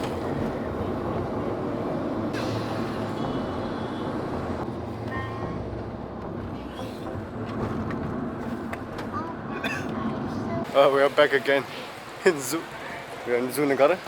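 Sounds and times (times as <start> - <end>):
vehicle engine rumble: 0.0 - 10.7.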